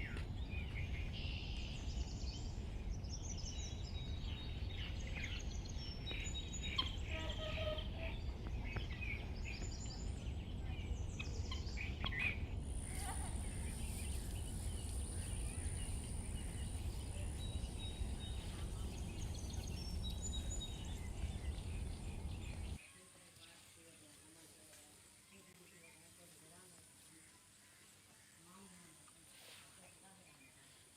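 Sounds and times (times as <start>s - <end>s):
birds chirping and calling: 0.0s - 22.8s
steady low rumble: 0.0s - 22.8s.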